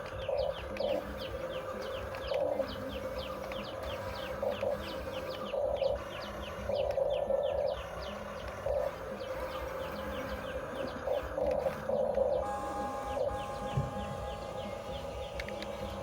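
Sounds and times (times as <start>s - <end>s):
bird chirping: 0.0s - 16.0s
small motor whirring: 0.0s - 16.0s.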